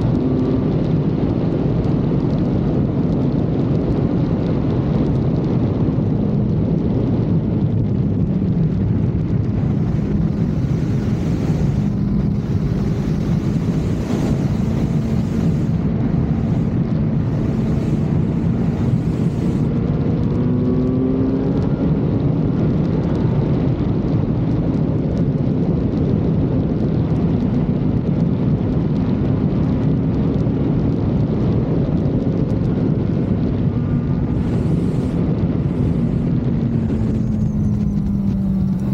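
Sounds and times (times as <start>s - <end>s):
motorcycle engine running: 0.0s - 38.9s
wind noise on microphone: 0.0s - 38.9s.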